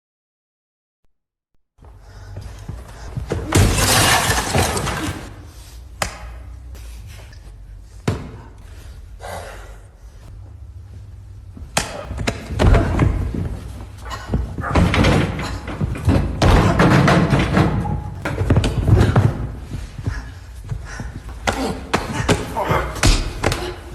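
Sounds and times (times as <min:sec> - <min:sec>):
steady low hum: 0:01.8 - 0:23.9
punch and kick impacts: 0:11.6 - 0:23.9.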